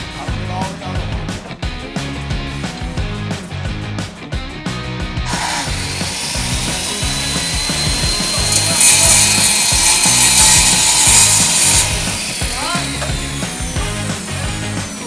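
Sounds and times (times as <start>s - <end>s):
rock music: 0.0s - 15.0s
power saw cutting board: 5.2s - 15.0s.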